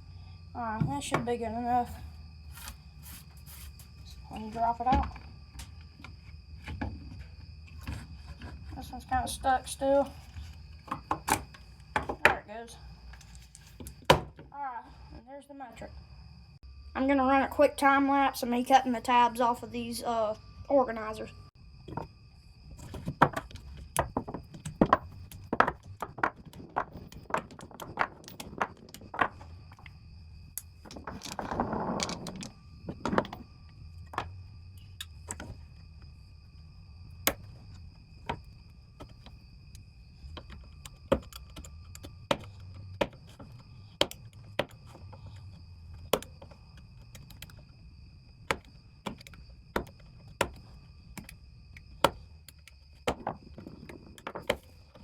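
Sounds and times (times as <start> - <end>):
rustling scrape: 2.4 - 4.2.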